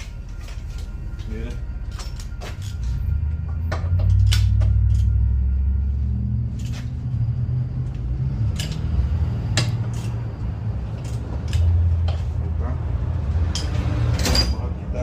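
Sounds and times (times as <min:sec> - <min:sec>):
hand tools clicking and knocking: 0:00.0 - 0:05.2, 0:08.5 - 0:12.6, 0:13.4 - 0:14.6
steady low rumble: 0:00.0 - 0:15.0.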